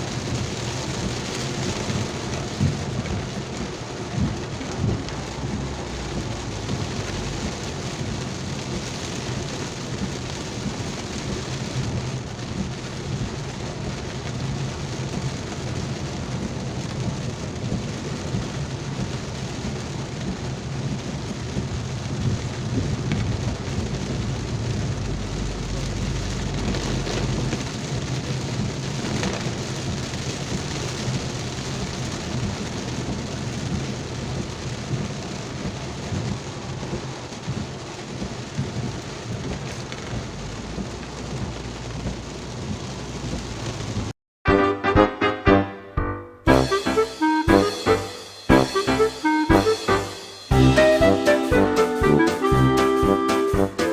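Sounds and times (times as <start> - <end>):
low rumble: 0.0 - 8.6
heavy rain falling: 0.0 - 53.9.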